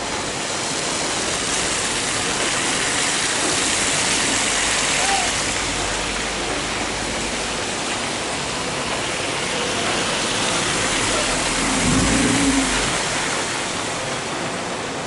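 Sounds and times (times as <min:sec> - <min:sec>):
loud rushing noise: 0:08.0 - 0:14.6
low hum: 0:11.2 - 0:13.2.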